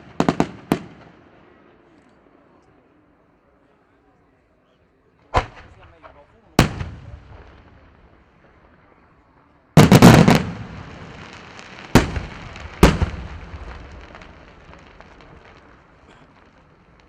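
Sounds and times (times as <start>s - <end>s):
firework shells bursting: 9.8s - 17.0s.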